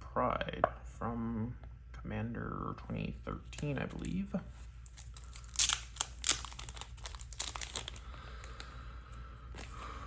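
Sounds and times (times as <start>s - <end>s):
packaging crinkling and tearing: 4.8s - 8.7s.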